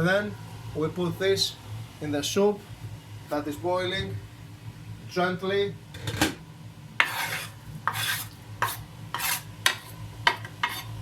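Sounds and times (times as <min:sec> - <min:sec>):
knife scraping chopping board: 0:07.0 - 0:11.0.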